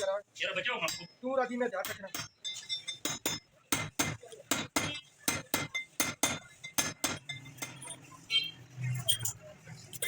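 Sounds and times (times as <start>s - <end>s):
metal clinking on metal: 1.9s - 3.5s.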